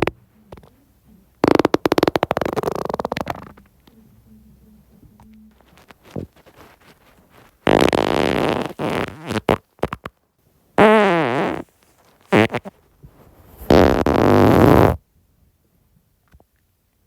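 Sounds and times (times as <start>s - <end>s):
person farting: 1.4s - 3.6s, 7.6s - 10.1s, 10.8s - 11.7s, 12.3s - 12.7s, 13.6s - 15.0s.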